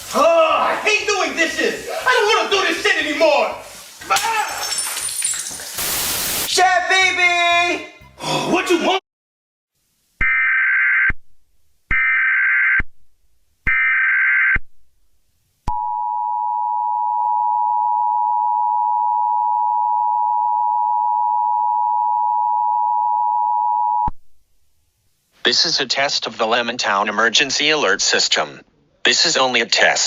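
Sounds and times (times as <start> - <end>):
digital data tone bursts: 5.8 - 6.6.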